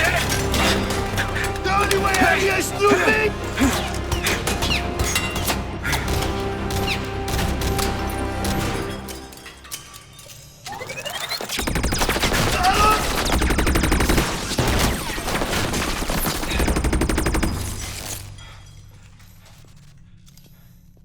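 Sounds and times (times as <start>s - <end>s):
automatic gunfire: 11.6s - 18.1s.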